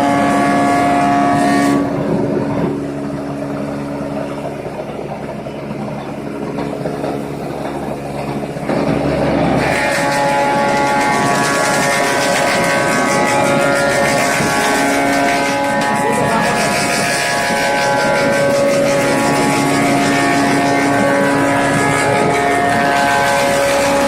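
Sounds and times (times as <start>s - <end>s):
thickness planer whining: 6.0s - 24.0s.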